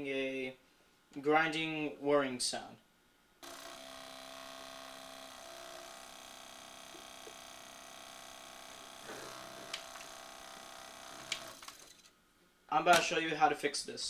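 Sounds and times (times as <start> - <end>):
disc mechanism grinding whir: 3.4 - 12.1.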